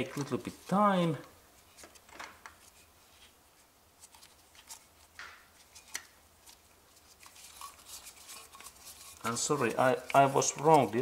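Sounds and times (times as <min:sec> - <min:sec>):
hose fitting scraping and clicking: 0:07.2 - 0:11.0.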